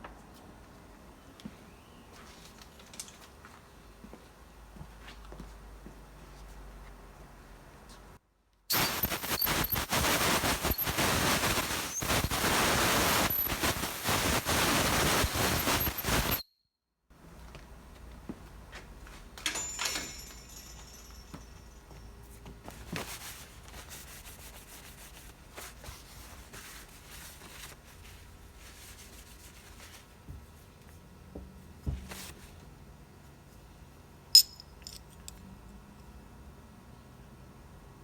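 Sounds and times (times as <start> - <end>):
small metal parts clinking: 19.4 - 21.4, 34.4 - 35.4.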